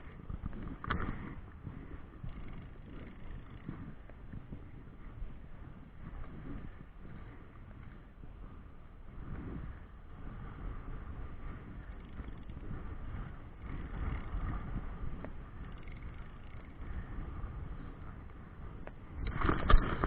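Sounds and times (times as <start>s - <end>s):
wind buffeting microphone: 0.0s - 20.0s
choppy river water: 19.2s - 20.0s.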